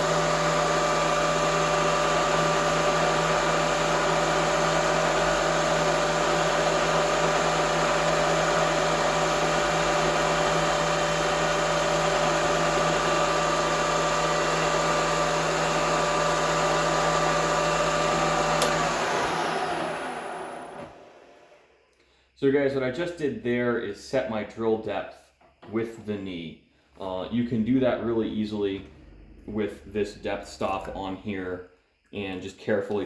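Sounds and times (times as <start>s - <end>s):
milling machine motor humming: 0.0s - 21.6s, 28.7s - 31.4s
machine switch click: 18.6s - 18.8s.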